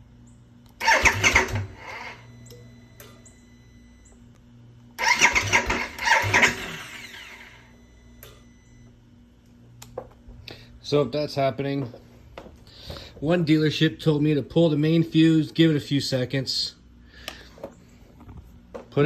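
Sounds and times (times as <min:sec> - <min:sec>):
motorcycle engine cranking: 0:00.8 - 0:02.2, 0:05.0 - 0:07.5.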